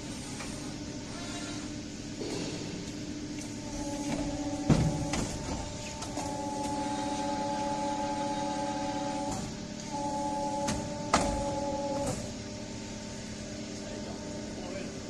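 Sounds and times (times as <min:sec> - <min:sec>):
motor whining: 0:03.4 - 0:15.0
loud mechanical clunk: 0:03.7 - 0:06.8, 0:09.0 - 0:12.4.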